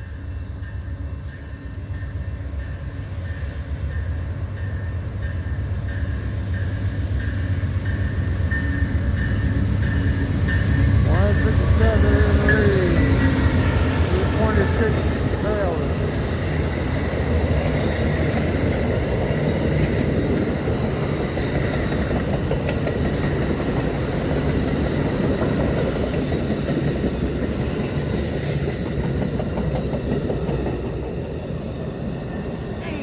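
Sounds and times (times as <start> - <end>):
train wheels clicking over rail joints: 7.8 - 31.8.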